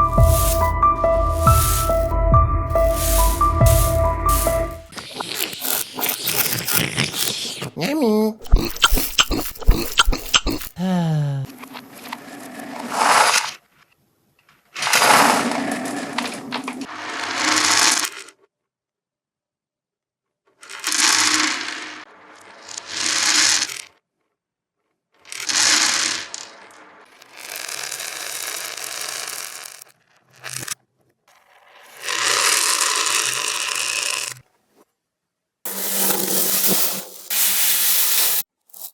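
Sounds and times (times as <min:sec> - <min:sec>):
reversed plastic beads rattling: 0:02.8 - 0:07.7, 0:08.4 - 0:10.8, 0:35.7 - 0:38.9.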